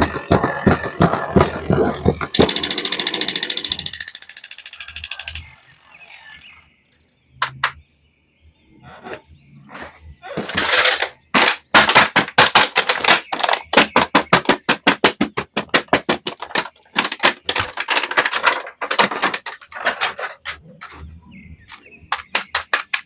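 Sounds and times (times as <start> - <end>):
packaging clicks and crackles: 10.6 - 21.0.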